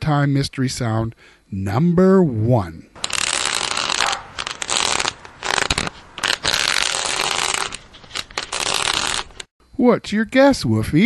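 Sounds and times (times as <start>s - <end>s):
metal nozzle scraping on pavement: 3.0s - 9.5s.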